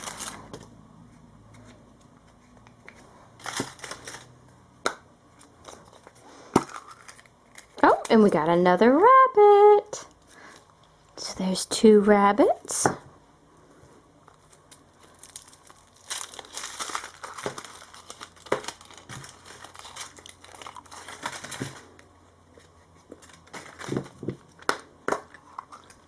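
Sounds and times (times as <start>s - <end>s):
wrapper crinkling and tearing: 0.0s - 0.5s, 3.4s - 4.4s, 5.7s - 8.1s, 14.4s - 22.1s, 23.0s - 24.7s.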